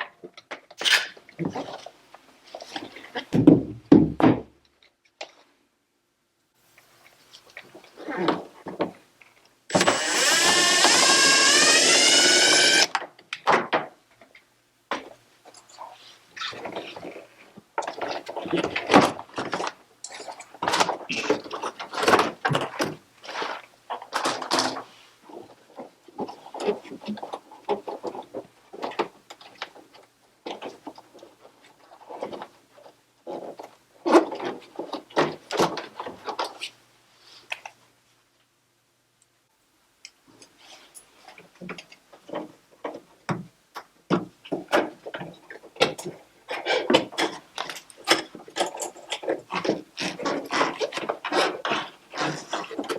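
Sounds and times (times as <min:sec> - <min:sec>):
cordless power driver whine: 0:09.7 - 0:12.9.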